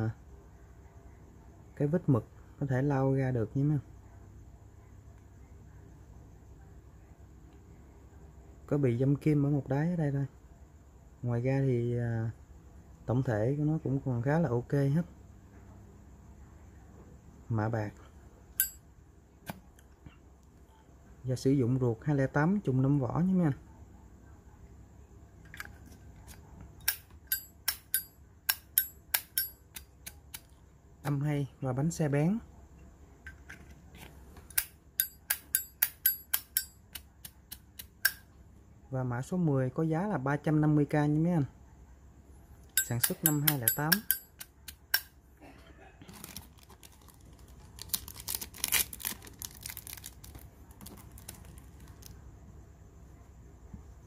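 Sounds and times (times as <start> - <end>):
lighter flint wheel strike: 26.8 - 30.5, 34.5 - 38.3, 42.8 - 45.1
crinkling rustling handling noise: 46.0 - 52.2.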